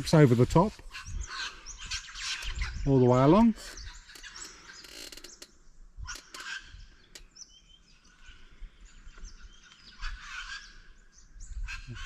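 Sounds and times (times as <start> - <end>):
birds chirping: 0.0 - 12.0.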